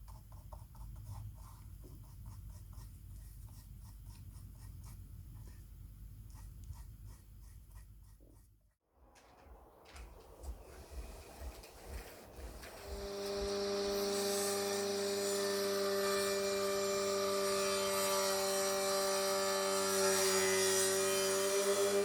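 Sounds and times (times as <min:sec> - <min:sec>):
hiss of tool working material: 0:10.7 - 0:22.0
electric power tool humming: 0:10.9 - 0:22.0.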